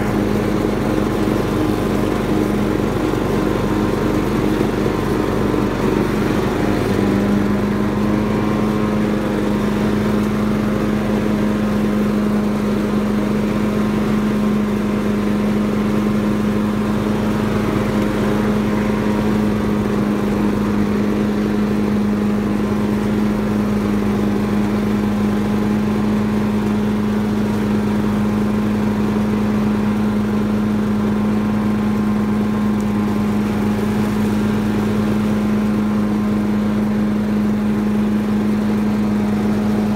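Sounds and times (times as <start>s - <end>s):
lawnmower engine humming: 0.0s - 39.9s.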